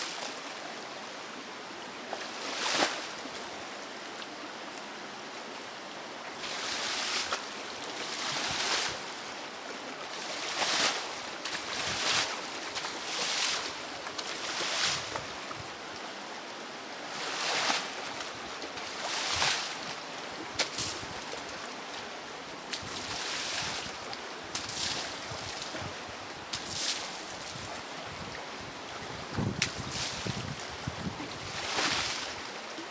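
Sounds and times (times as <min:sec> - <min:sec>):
waves splashing: 0:29.3 - 0:32.9.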